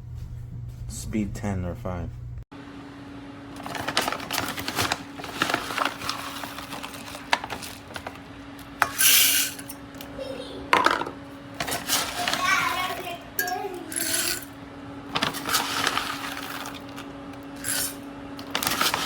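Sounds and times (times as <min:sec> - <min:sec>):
steady low hum: 0:00.0 - 0:04.0
small hard objects clinking: 0:13.4 - 0:14.5, 0:15.1 - 0:19.0.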